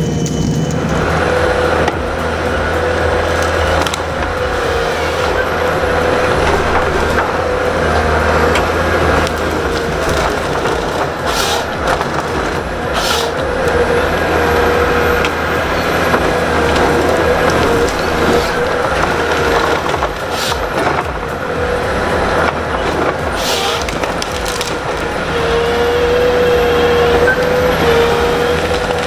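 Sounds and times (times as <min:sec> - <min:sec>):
heavy machinery droning: 0:00.0 - 0:29.0.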